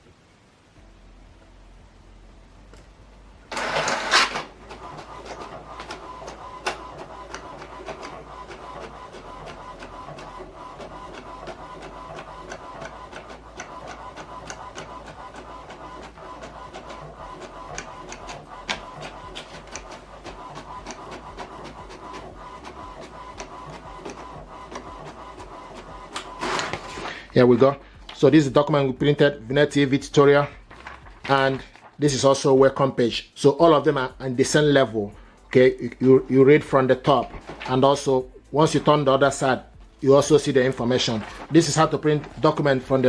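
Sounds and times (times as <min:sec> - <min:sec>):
printer sharp clicks: 0:03.5 - 0:27.4, 0:33.4 - 0:43.0
inkjet printer running: 0:03.5 - 0:29.4, 0:33.4 - 0:43.0.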